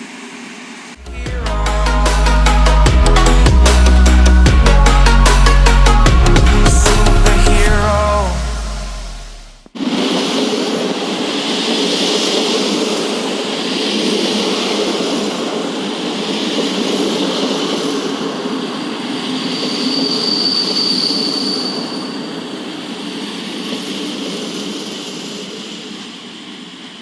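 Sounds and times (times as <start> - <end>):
train rumbling on rails: 0.0 - 27.0
high wheel squeal: 16.7 - 25.7.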